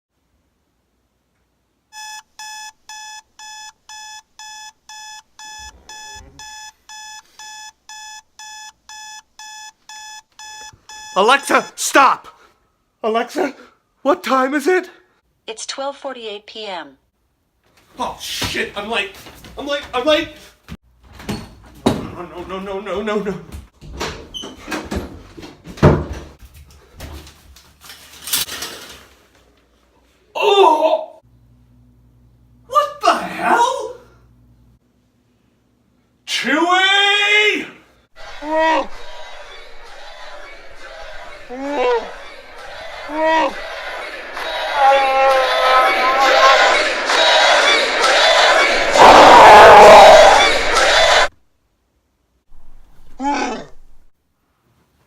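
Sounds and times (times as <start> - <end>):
high pitched alarm beeping: 2.0 - 11.8.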